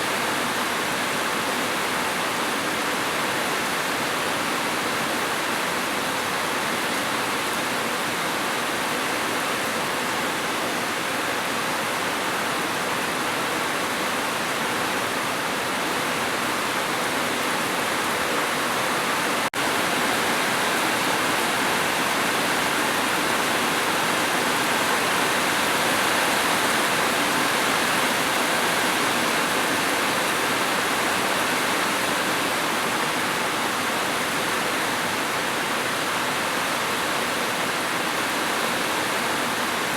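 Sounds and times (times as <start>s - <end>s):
steady rain hiss: 11.9s - 39.9s.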